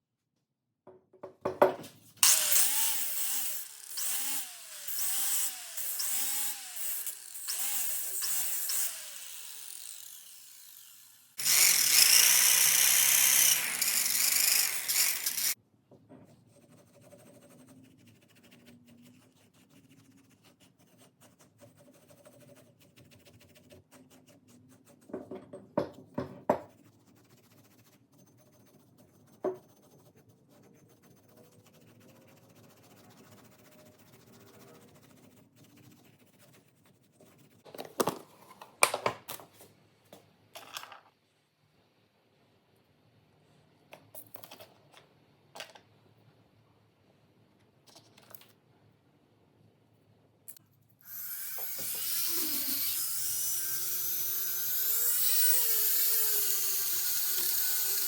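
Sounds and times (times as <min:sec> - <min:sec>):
power tool running: 0:02.2 - 0:15.6, 0:51.0 - 0:58.0.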